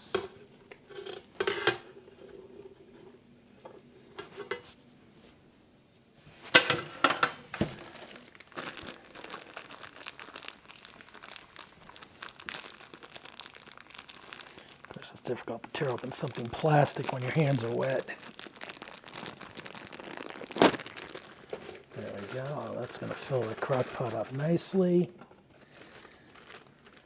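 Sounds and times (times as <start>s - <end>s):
plastic package crinkling: 6.5s - 27.0s.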